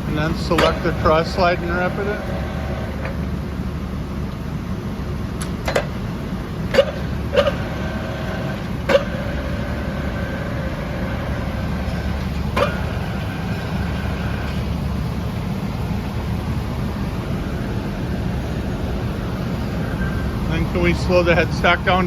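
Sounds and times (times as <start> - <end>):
faint whine: 0.0 - 22.0
lathe humming: 0.0 - 22.0
sharp clunks: 0.5 - 0.9, 5.4 - 6.0.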